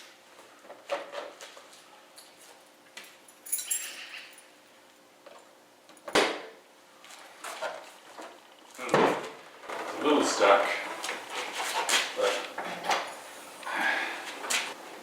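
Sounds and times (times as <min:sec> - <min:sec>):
metallic jingle: 0:03.4 - 0:04.5.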